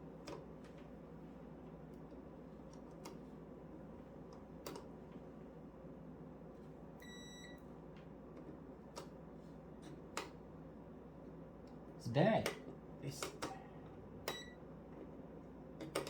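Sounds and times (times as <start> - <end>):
multimeter beep: 7.0 - 7.6, 14.3 - 14.6.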